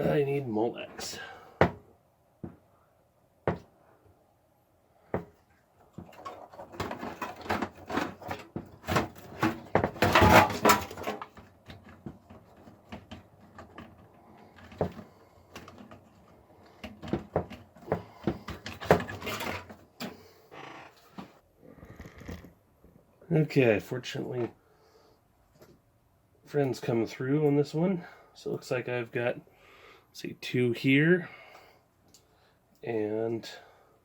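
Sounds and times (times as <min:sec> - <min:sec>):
clattering and rustling: 0:05.2 - 0:20.2.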